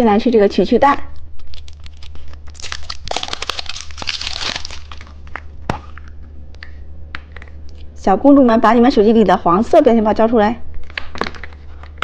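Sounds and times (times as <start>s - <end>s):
plastic wrapper crinkling and tearing: 1.1s - 6.1s.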